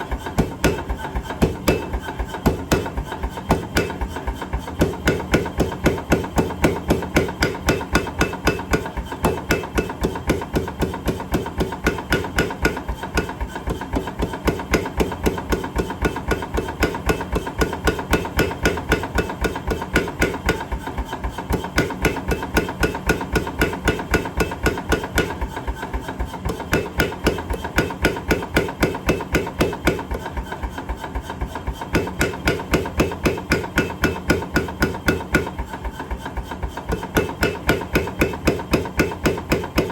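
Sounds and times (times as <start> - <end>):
power hammer striking hot metal: 0.2 - 13.3, 26.5 - 30.1, 31.9 - 35.8, 36.9 - 39.9.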